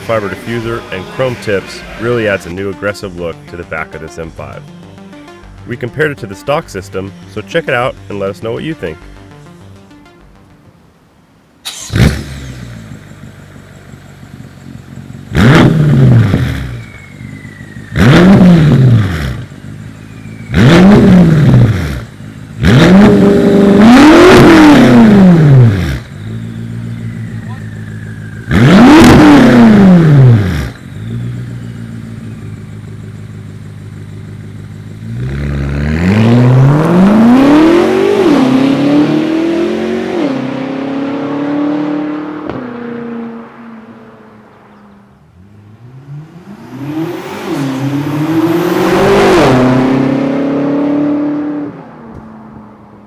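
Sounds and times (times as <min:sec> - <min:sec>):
car accelerating through gears: 0:00.0 - 0:02.7, 0:11.6 - 0:13.2, 0:15.0 - 0:53.0
car engine revving and idling: 0:00.0 - 0:10.2, 0:11.6 - 0:53.0.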